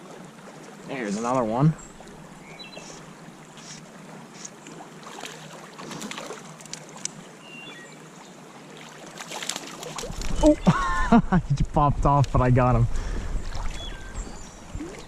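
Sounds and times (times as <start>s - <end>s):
creek water running: 0.0s - 15.0s
small splashes and clicks: 3.6s - 7.3s, 8.8s - 10.6s.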